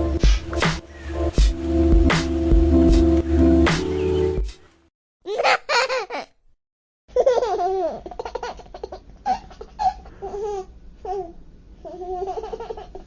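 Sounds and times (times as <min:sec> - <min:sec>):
baby laughing and giggling: 0:05.3 - 0:06.4, 0:07.1 - 0:13.0.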